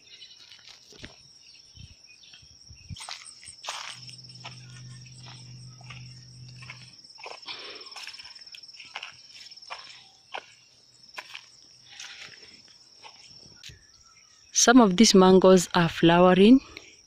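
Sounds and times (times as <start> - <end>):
footsteps on dry ground: 0.0 - 13.8
cricket trill: 0.0 - 17.0
low hum: 2.7 - 7.9.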